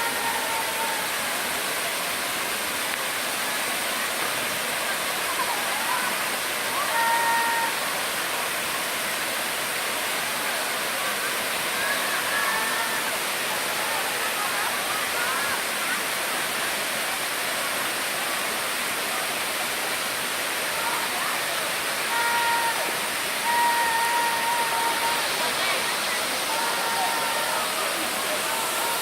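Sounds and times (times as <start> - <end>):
waterfall rushing: 0.0 - 29.0
faint voice-like tones: 19.0 - 29.0.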